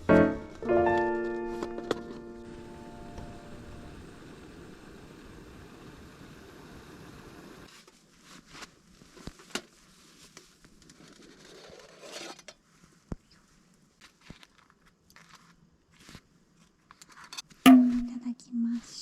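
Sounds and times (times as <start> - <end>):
rustle of small objects handled: 12.6 - 17.4.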